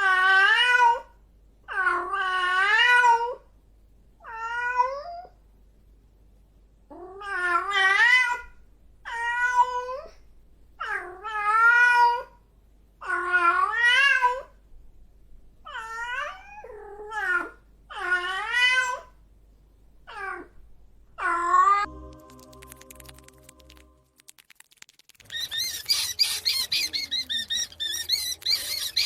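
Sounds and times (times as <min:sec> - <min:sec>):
cat meowing: 0:04.2 - 0:05.4, 0:15.7 - 0:19.2, 0:25.3 - 0:29.0.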